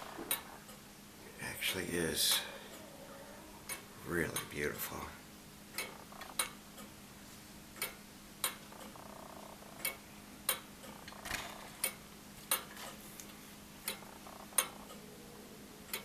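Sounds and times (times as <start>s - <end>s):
clock ticking: 3.6s - 5.1s, 5.7s - 7.0s, 7.7s - 12.8s, 13.8s - 15.0s.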